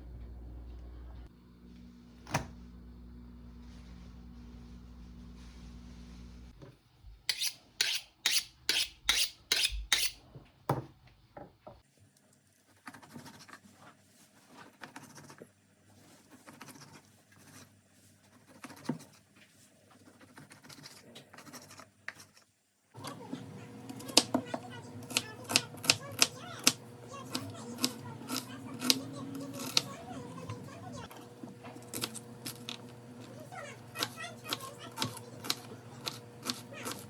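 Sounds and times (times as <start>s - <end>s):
low hum: 0.0s - 6.5s
scratching and rubbing: 7.3s - 10.2s, 12.8s - 22.5s.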